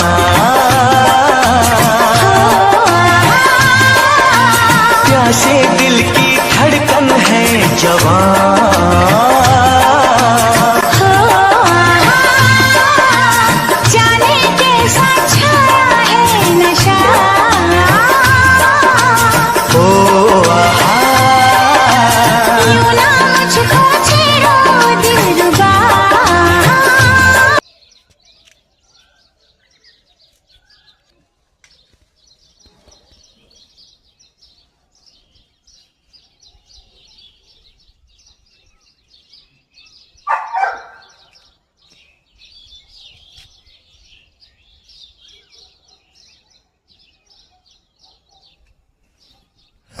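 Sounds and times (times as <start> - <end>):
small birds chirping: 27.6 - 50.0.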